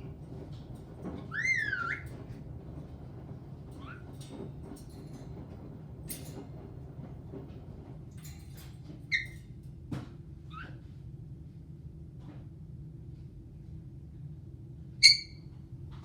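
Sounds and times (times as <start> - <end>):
parrot squeaking and chirping: 1.3 - 2.1, 15.0 - 15.4.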